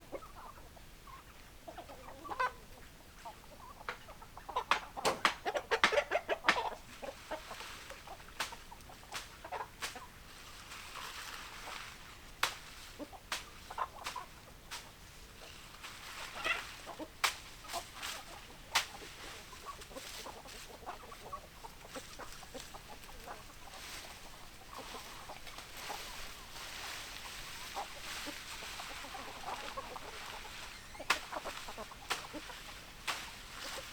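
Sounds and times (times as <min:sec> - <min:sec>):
hens clucking: 0:00.0 - 0:33.9
sharp clicks: 0:04.7 - 0:06.0.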